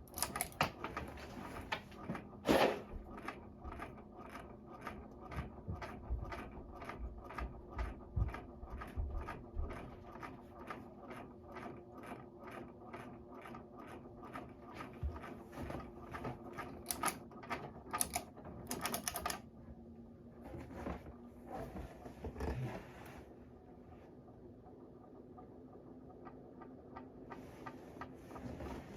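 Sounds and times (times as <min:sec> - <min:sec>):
fan clicking: 0:00.0 - 0:02.0, 0:16.6 - 0:19.5
ceiling fan motor hum: 0:00.0 - 0:28.9.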